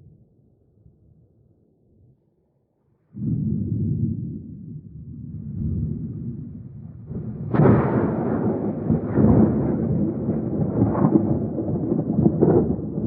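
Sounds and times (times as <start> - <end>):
thunder rumbling and cracking: 3.2 - 13.0.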